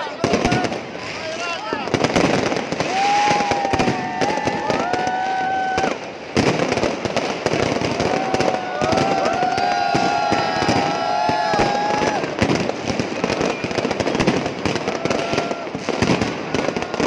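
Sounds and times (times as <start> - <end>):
fireworks bangs and crackles: 0.0 - 17.0
fireworks whistling: 0.0 - 17.0.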